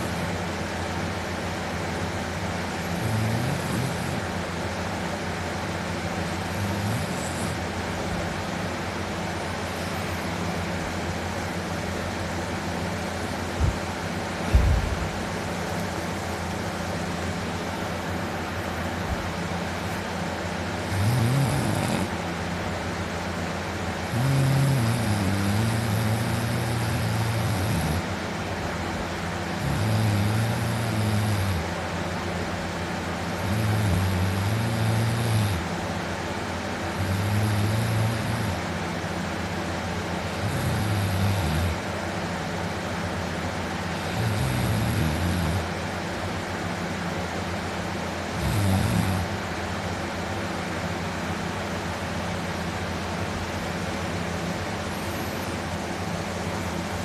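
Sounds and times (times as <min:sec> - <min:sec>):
man snoring loudly: 0:00.0 - 0:00.4, 0:02.5 - 0:04.5, 0:06.0 - 0:08.0, 0:20.8 - 0:22.2, 0:24.0 - 0:28.2, 0:29.6 - 0:31.8, 0:33.3 - 0:35.8, 0:36.9 - 0:38.7, 0:40.2 - 0:42.0, 0:43.8 - 0:45.9, 0:48.3 - 0:49.5, 0:54.7 - 0:56.0.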